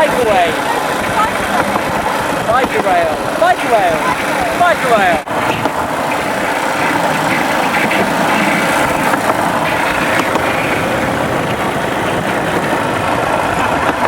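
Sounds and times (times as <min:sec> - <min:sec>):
motorbike engine running steadily: 0:05.7 - 0:12.8.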